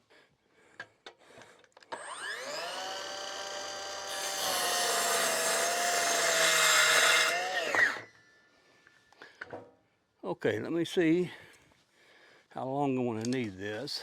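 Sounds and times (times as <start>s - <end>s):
power drill driving screw into wood: 1.8s - 8.1s.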